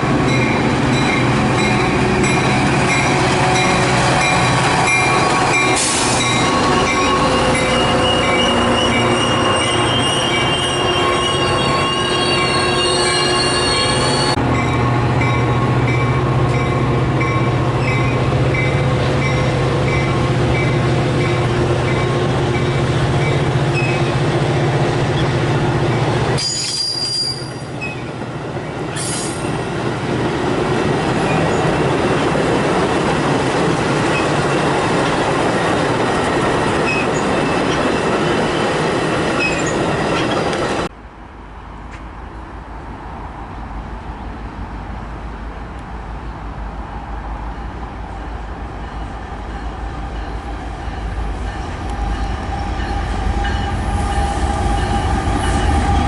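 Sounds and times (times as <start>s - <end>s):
train running noise: 0.0s - 56.0s
train wheels squealing on rails: 0.3s - 24.2s, 26.4s - 28.2s, 28.9s - 29.6s, 36.8s - 38.7s, 39.3s - 40.6s, 50.2s - 56.0s.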